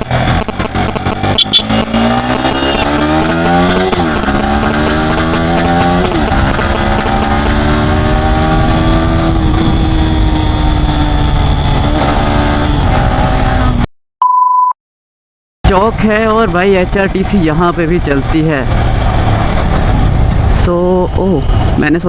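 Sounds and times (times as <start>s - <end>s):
motorcycle engine accelerating: 0.0s - 13.9s.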